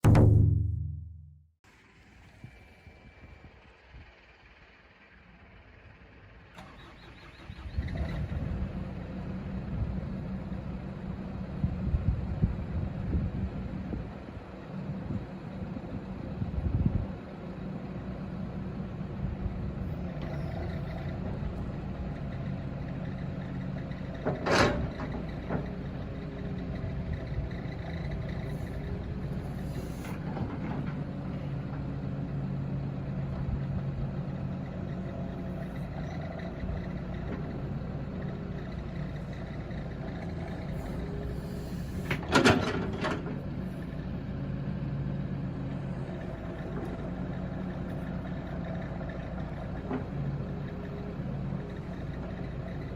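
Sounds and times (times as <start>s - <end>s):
sharp knocks: 0.0s - 1.4s
excavator diesel engine running: 1.9s - 52.9s.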